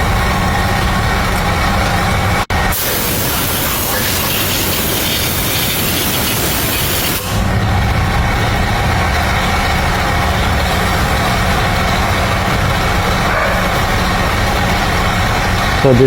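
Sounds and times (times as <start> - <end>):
hiss: 2.7 - 7.4.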